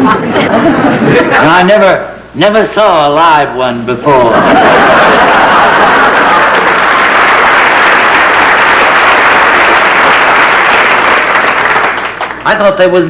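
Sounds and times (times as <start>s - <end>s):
audience laughing: 0.0s - 1.5s, 4.3s - 7.5s
audience applauding: 4.9s - 12.6s.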